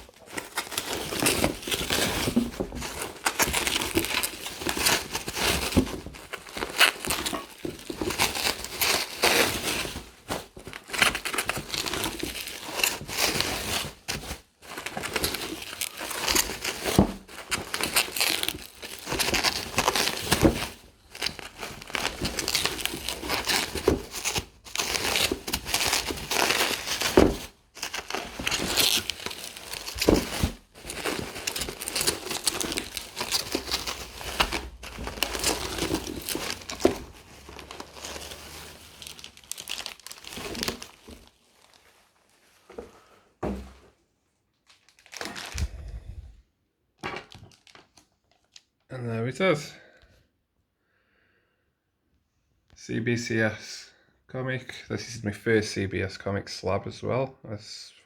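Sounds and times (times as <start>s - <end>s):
packing material crinkling: 0.0s - 43.0s, 44.6s - 46.3s, 47.2s - 48.8s.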